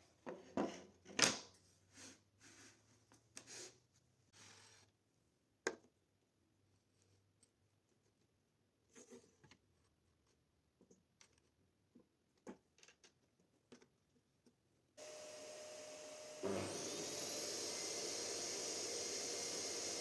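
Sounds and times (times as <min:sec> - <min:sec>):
steady motor hum with hiss: 0:15.0 - 0:20.0
table saw motor starting and whining: 0:15.0 - 0:20.0.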